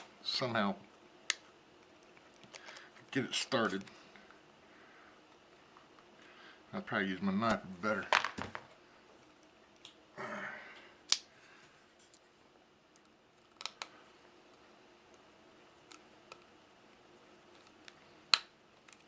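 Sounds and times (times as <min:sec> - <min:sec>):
sharp clicks and snaps: 0:09.4 - 0:10.0, 0:11.1 - 0:11.3, 0:12.9 - 0:14.0.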